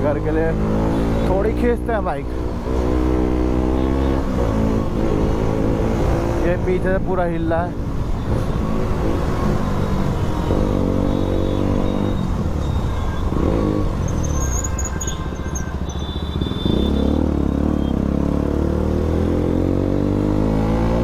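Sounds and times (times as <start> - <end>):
motorcycle engine revving: 0.3 - 1.6, 2.5 - 6.7, 7.9 - 21.0.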